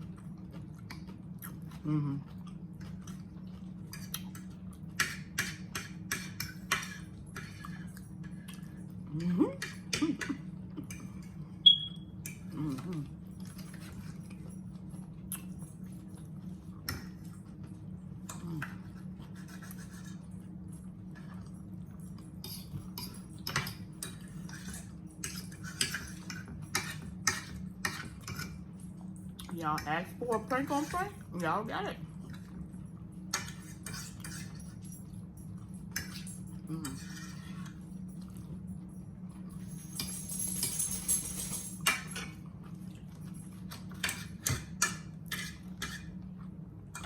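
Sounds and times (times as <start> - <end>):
steady low hum: 0.0 - 47.0
chewing mouth smacks: 0.6 - 4.5
cutlery scraping on plates: 33.4 - 34.7, 44.0 - 46.1.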